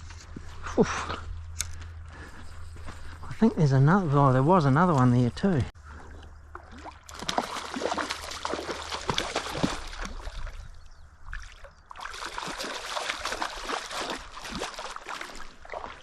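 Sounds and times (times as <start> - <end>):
river water splashing: 5.9 - 16.0.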